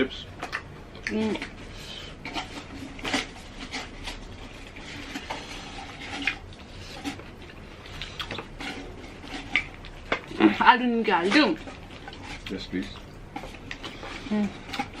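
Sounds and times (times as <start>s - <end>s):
chewing: 0.4s - 15.0s.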